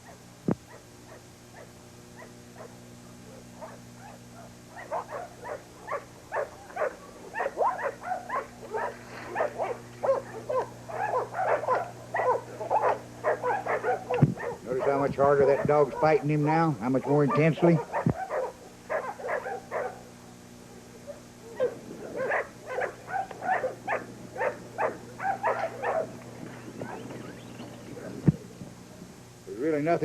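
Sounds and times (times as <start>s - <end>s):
low electrical hum: 0.0s - 30.0s
dog whining: 3.3s - 16.2s, 17.3s - 20.0s, 21.0s - 28.4s.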